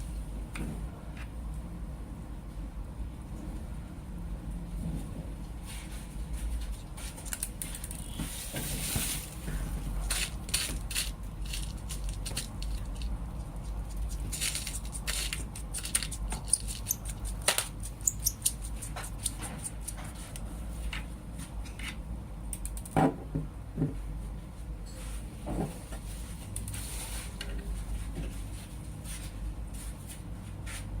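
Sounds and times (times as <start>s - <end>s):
steady low hum: 0.0s - 31.0s
metal parts clicking and clinking: 10.0s - 20.0s.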